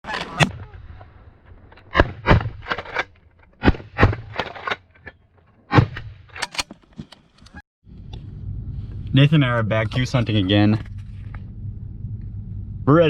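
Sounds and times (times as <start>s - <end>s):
sharp bangs: 0.1s - 6.7s.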